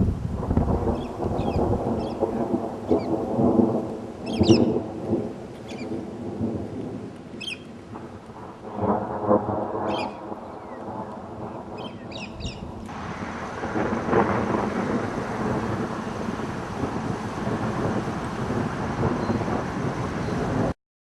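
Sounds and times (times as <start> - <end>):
thunder rumbling: 0.0 - 20.8
high bird chirps: 4.3 - 4.7, 7.4 - 7.7, 9.9 - 10.8, 11.8 - 12.7.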